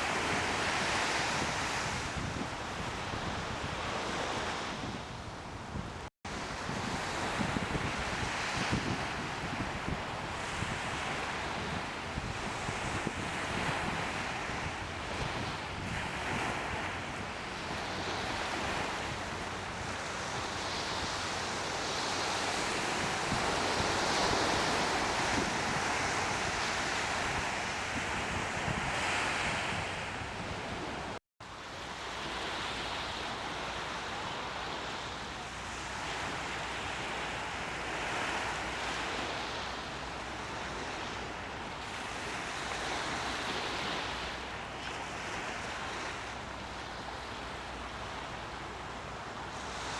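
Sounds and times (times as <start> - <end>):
wind buffeting microphone: 0.0 - 31.2
waves washing: 6.3 - 49.9.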